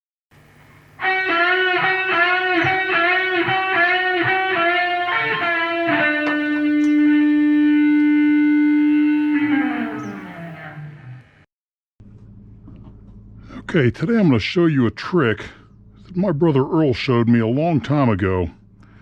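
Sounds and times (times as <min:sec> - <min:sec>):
guitar bending notes: 0:01.0 - 0:11.4.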